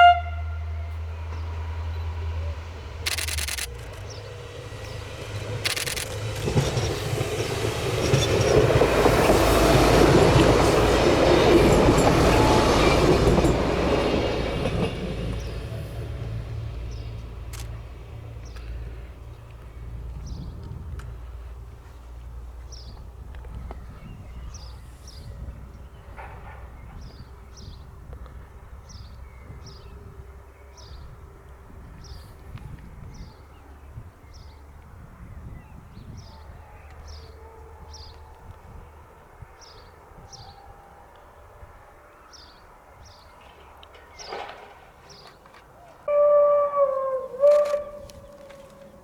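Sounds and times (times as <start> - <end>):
songbird chirping: 42.2 - 49.0.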